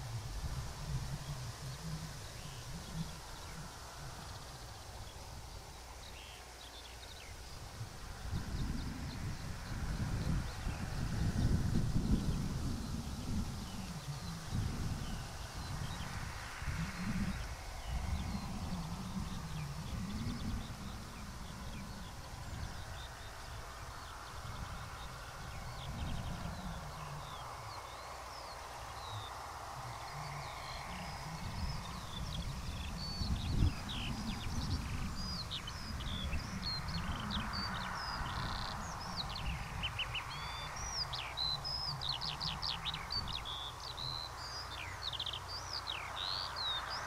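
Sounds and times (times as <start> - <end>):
faint bird chirps: 0.0 - 47.0
low outdoor rumble: 0.0 - 47.0.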